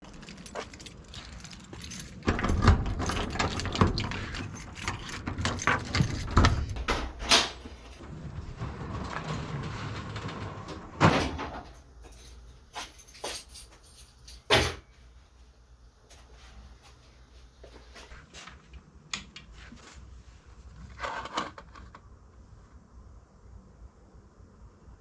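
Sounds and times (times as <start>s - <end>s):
knocks clunks and rattles: 1.7s - 8.0s, 9.2s - 13.5s.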